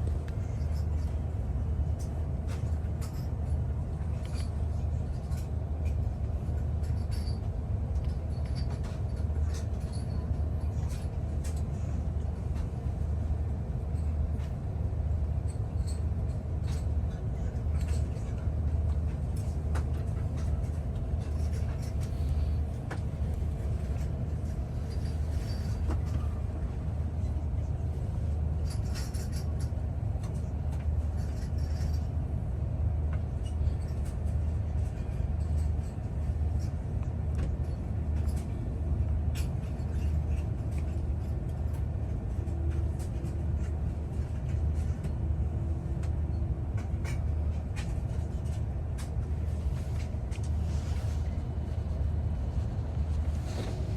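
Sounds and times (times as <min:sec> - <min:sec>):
airplane cabin rumble: 0:00.0 - 0:53.9.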